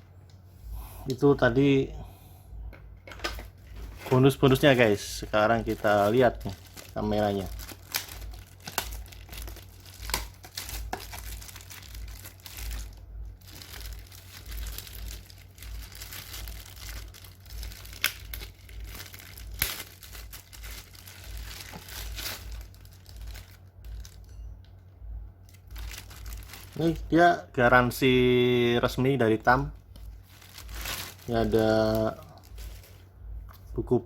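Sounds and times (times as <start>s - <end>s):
packaging crinkling and rustling: 3.0s - 24.5s, 25.4s - 33.7s.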